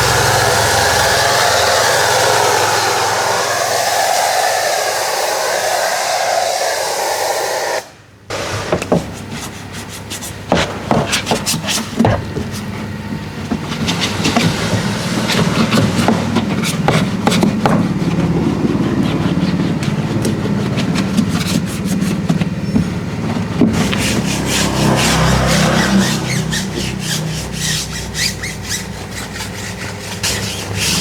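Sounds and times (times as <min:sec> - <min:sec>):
pressure washer spraying: 0:00.0 - 0:08.8, 0:13.9 - 0:20.0, 0:23.7 - 0:31.0.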